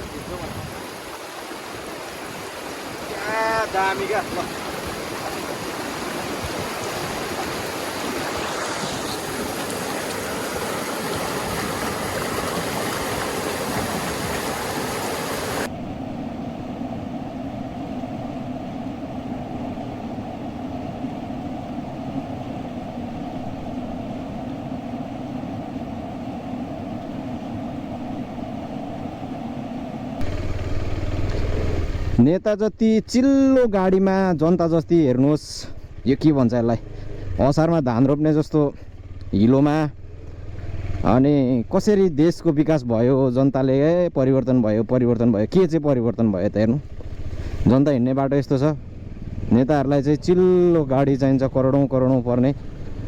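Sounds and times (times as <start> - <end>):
stream water rushing over stones: 0.0 - 15.7
low hum: 15.6 - 32.2
motorcycle engine running: 30.2 - 32.3, 38.8 - 41.7, 46.8 - 47.8, 48.7 - 49.7.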